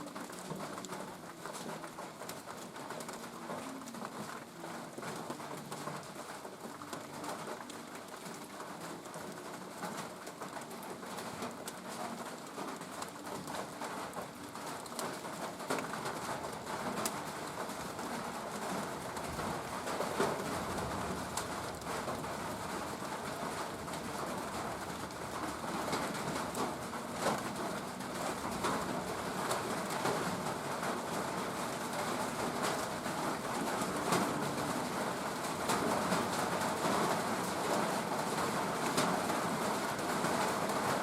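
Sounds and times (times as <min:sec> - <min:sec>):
steady rain: 0:00.0 - 0:41.0.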